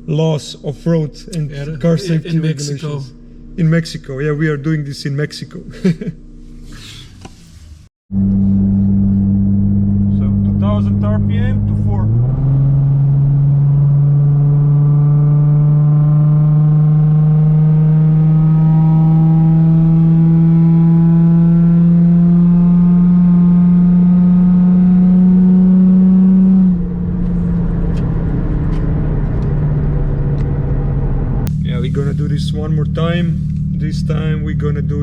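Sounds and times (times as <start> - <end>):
car exhaust revving: 8.1 - 35.0.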